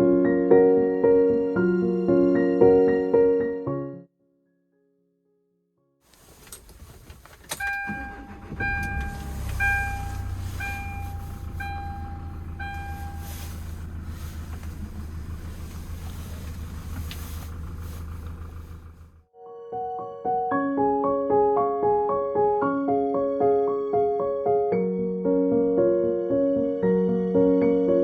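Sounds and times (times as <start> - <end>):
diesel engine cranking and idling: 6.2 - 19.3
dashboard warning chime: 7.5 - 13.7.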